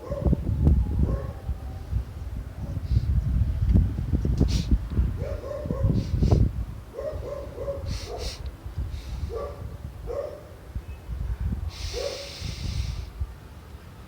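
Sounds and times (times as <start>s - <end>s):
burst of hissing noise: 4.4s - 4.8s, 7.9s - 9.3s, 11.7s - 13.2s.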